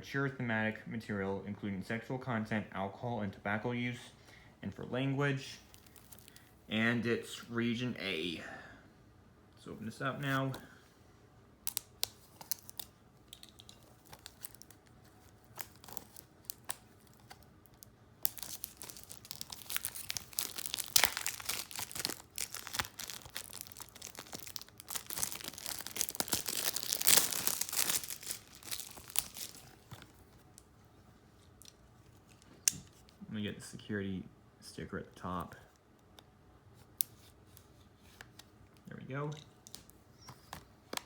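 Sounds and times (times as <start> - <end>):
plastic wrap crinkling and tearing: 5.7 - 6.5, 11.7 - 30.7.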